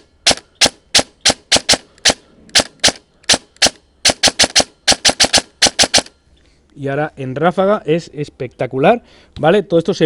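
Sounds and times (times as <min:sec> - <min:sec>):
airsoft rifle dry-firing shots: 0:00.0 - 0:06.1.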